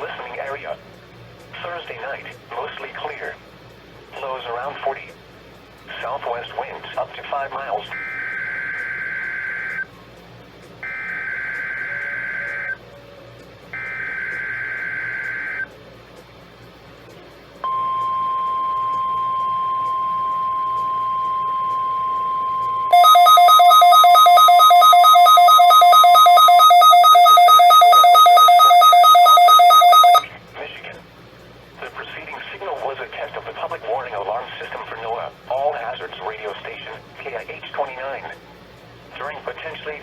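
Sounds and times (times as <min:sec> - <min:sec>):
steady alarm tone: 0:07.8 - 0:09.9, 0:10.8 - 0:12.8, 0:13.7 - 0:15.7, 0:17.6 - 0:30.3.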